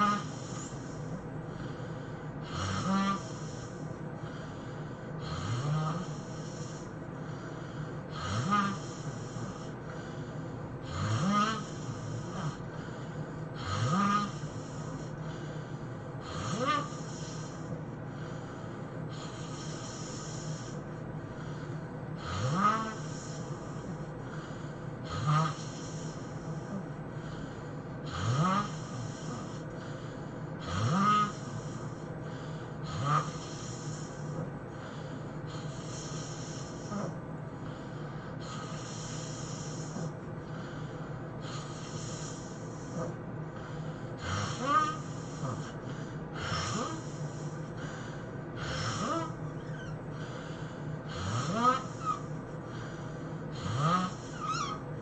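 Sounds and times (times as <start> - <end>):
man snoring loudly: 0.0 - 1.0, 2.4 - 3.8, 5.2 - 6.8, 8.1 - 9.7, 10.8 - 12.7, 13.6 - 15.3, 16.2 - 17.6, 22.2 - 24.1, 25.0 - 26.8, 28.0 - 29.7, 30.6 - 32.0, 32.8 - 34.4, 44.2 - 47.5, 48.6 - 49.8, 51.0 - 52.8, 53.5 - 54.8.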